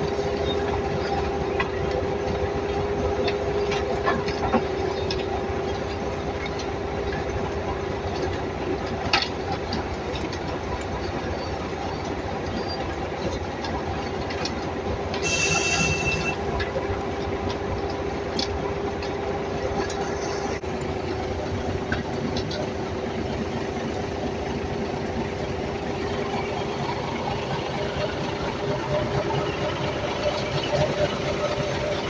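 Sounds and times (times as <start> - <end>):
construction machinery whine: 0.0 - 32.0
high-pitched squeal with hiss: 15.2 - 16.4.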